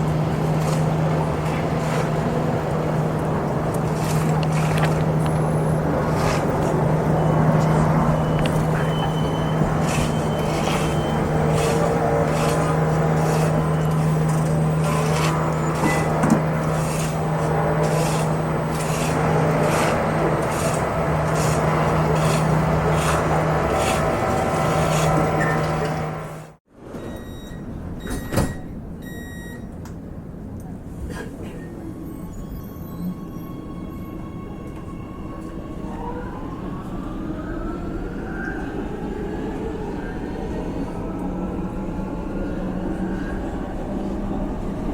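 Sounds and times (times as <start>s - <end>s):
electric train rumble: 0.0s - 26.6s, 27.6s - 44.9s
train motors whining: 0.0s - 26.6s
raspy scraping: 9.6s - 25.7s.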